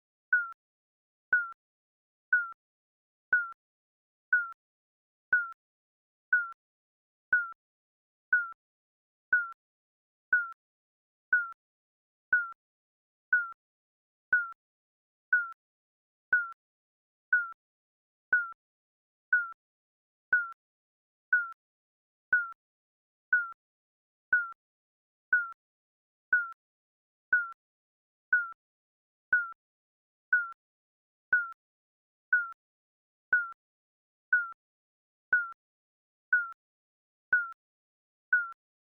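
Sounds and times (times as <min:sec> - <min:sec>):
countdown timer beeps: 0:00.3 - 0:00.6, 0:01.3 - 0:01.6, 0:02.3 - 0:02.6, 0:03.3 - 0:03.6, 0:04.3 - 0:04.6, 0:05.3 - 0:05.6, 0:06.3 - 0:06.6, 0:07.3 - 0:07.6, 0:08.3 - 0:08.6, 0:09.3 - 0:09.6, 0:10.3 - 0:10.6, 0:11.3 - 0:11.6, 0:13.3 - 0:13.6, 0:17.3 - 0:17.6, 0:18.3 - 0:18.6, 0:19.3 - 0:19.6, 0:23.3 - 0:23.6, 0:25.3 - 0:25.6, 0:26.3 - 0:26.6, 0:27.3 - 0:27.6, 0:28.3 - 0:28.6, 0:29.3 - 0:29.6, 0:30.3 - 0:30.6, 0:31.3 - 0:31.6, 0:33.3 - 0:33.6, 0:34.3 - 0:34.6, 0:35.3 - 0:35.6, 0:37.3 - 0:37.6, 0:38.3 - 0:38.6.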